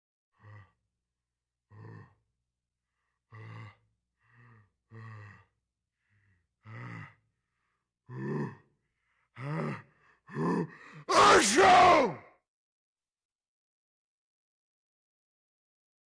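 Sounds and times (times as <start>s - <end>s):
man sighing and gasping: 10.8s - 12.2s.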